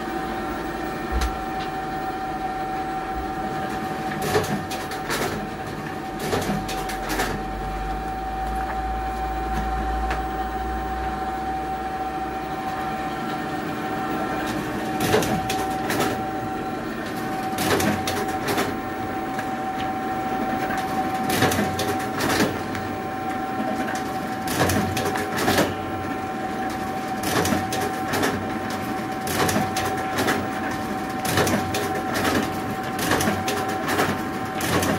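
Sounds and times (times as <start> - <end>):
machine motor hum: 0.0 - 34.9
stitching machine mechanical clacks: 4.1 - 7.6, 14.4 - 16.3, 17.1 - 18.8, 20.7 - 22.8, 23.6 - 25.9, 26.7 - 34.9.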